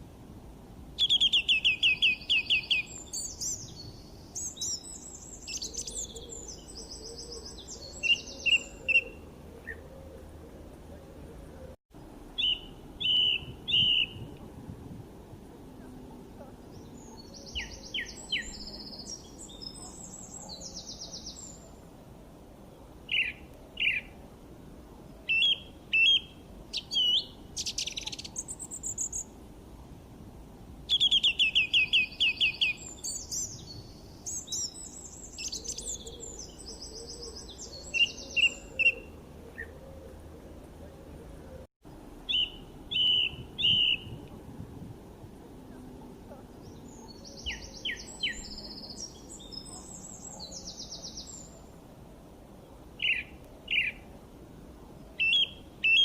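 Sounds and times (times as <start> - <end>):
steady low background noise: 0.0 - 56.0
bird trill: 1.0 - 9.8, 12.4 - 14.3, 25.3 - 29.3, 30.9 - 39.7, 42.3 - 44.2, 55.2 - 56.0
songbirds chirping and singing: 1.0 - 11.8, 12.4 - 14.3, 15.7 - 21.8, 30.9 - 40.4, 45.8 - 51.6.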